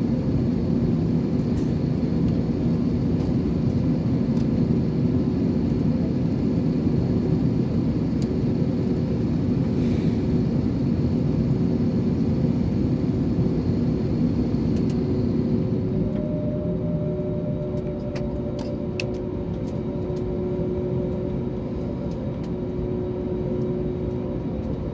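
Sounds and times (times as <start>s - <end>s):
jet engines and airflow rumble: 0.0s - 24.9s.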